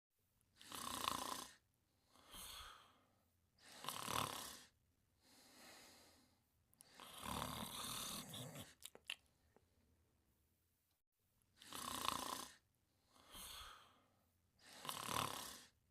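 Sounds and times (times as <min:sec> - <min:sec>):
snoring: 0:00.6 - 0:04.8, 0:06.8 - 0:08.8, 0:11.6 - 0:15.8
soft breaths: 0:01.5 - 0:09.9, 0:12.5 - 0:15.8.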